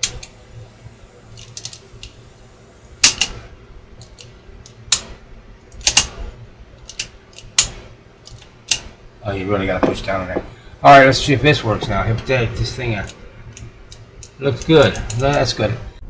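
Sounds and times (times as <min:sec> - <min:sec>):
cassette deck keys clicking: 0:00.0 - 0:00.4, 0:01.4 - 0:02.2, 0:03.0 - 0:03.4, 0:05.7 - 0:06.2, 0:06.8 - 0:08.8, 0:13.0 - 0:15.5
faint low hum: 0:00.0 - 0:16.0.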